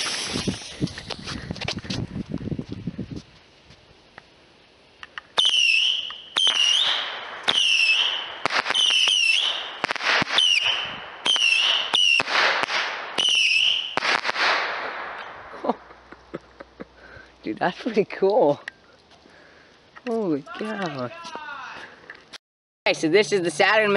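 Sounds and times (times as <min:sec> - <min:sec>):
whistling firework rockets: 0:00.0 - 0:01.4, 0:05.3 - 0:15.6.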